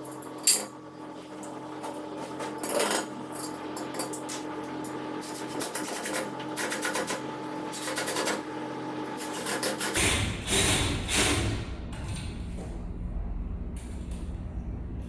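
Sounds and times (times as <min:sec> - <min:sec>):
tool scraping metal: 0:09.2 - 0:11.6.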